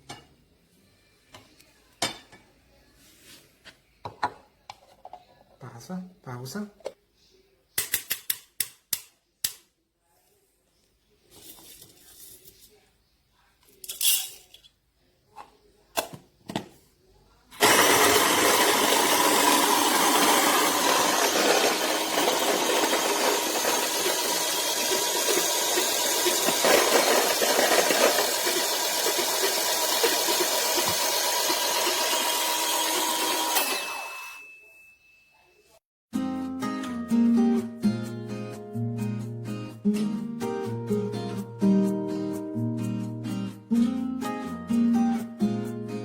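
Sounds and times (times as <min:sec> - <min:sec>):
coffee grinder whirring: 0:17.6 - 0:34.4.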